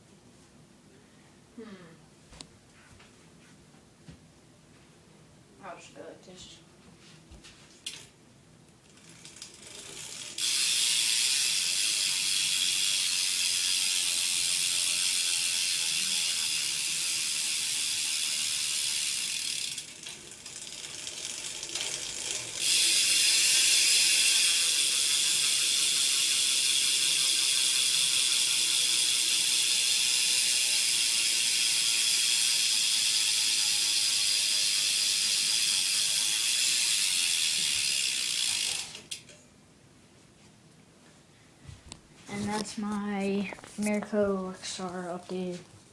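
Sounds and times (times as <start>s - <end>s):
bicycle hub ratcheting: 8.8s - 39.4s.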